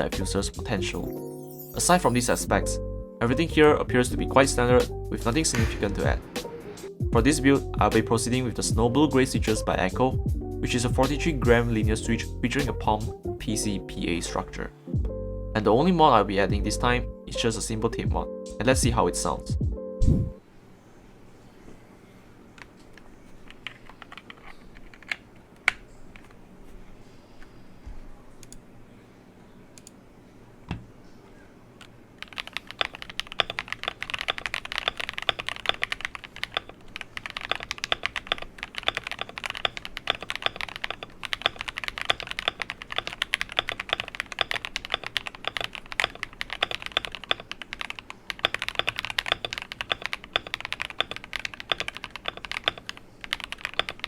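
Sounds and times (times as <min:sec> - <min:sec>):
typing on mechanical keyboard: 0:23.4 - 0:26.3, 0:32.2 - 0:54.0.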